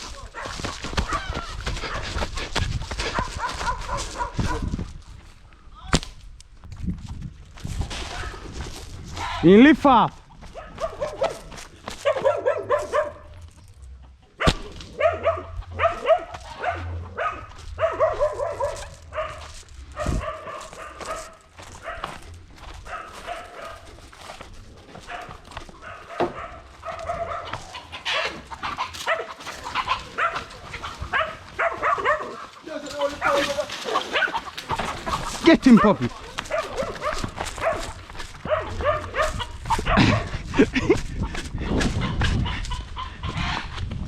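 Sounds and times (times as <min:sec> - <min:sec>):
dog barking excitedly: 0:00.0 - 0:04.7, 0:10.5 - 0:13.3, 0:14.4 - 0:24.2, 0:24.9 - 0:40.7.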